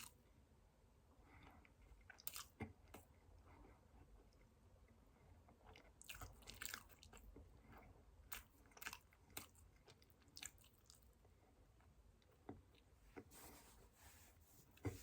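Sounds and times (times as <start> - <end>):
chewing soft cake: 0.0 - 0.2, 1.2 - 13.0.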